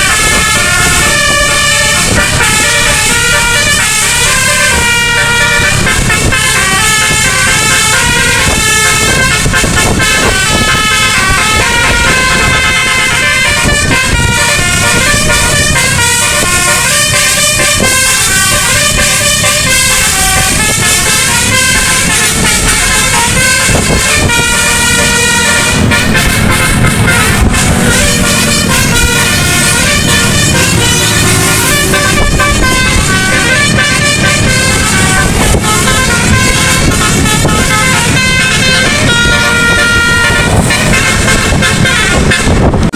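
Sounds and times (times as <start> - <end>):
bus musical air horn melody: 0.0 - 42.9.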